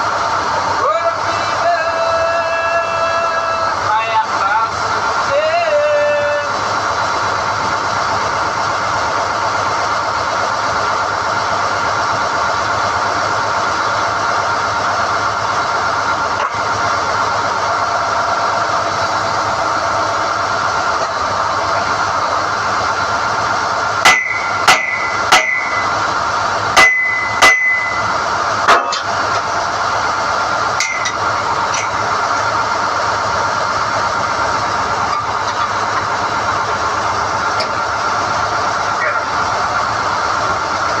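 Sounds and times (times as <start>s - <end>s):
drilling rig running: 0.0s - 41.0s
sharp metal clanks: 24.0s - 26.0s, 26.8s - 28.1s, 30.8s - 32.0s.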